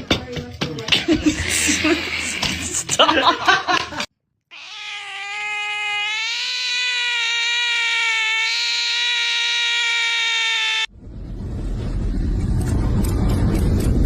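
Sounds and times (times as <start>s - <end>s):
cat yowling: 4.5s - 10.9s.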